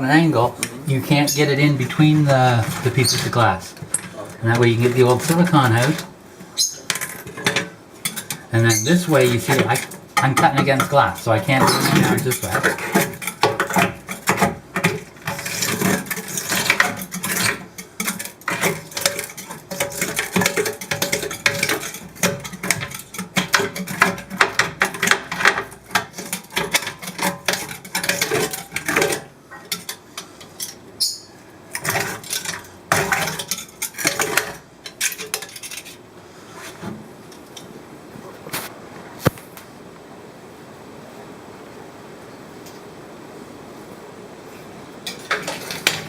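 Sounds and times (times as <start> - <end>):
razor blade scraping glass: 1.1 - 36.0.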